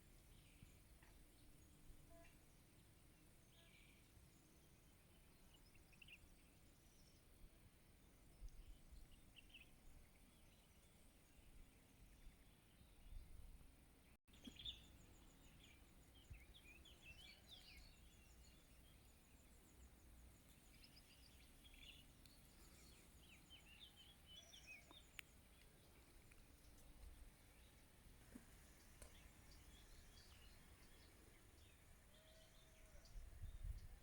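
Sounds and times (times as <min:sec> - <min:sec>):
small birds chirping and trilling: 0:14.3 - 0:34.0.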